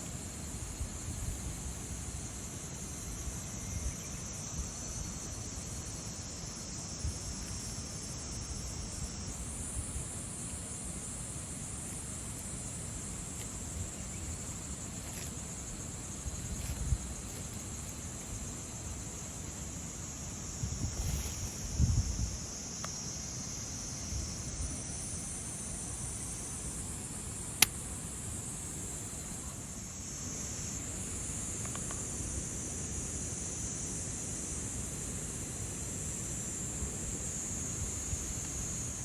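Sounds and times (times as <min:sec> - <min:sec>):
insects chirring: 0:00.0 - 0:39.0
wind rumble on microphone: 0:16.3 - 0:17.9, 0:20.5 - 0:22.5.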